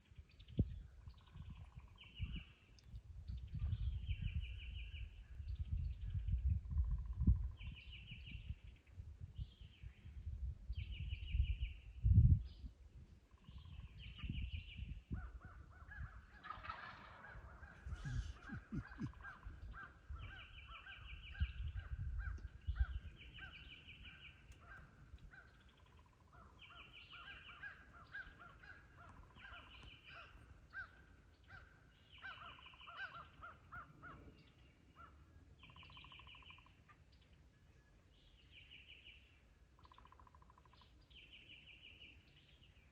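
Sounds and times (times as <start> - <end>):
crows cawing: 16.4 - 20.5, 27.2 - 34.2.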